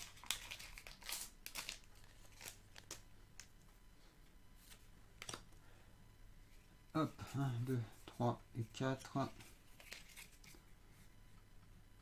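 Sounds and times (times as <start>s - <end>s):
foil wrapper crinkling: 0.0s - 3.0s.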